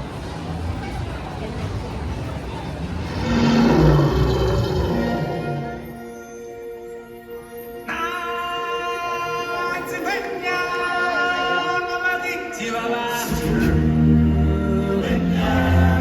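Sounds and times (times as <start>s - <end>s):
heavy bass: 2.8s - 5.9s
choir singing long notes: 3.1s - 6.2s, 13.0s - 16.0s.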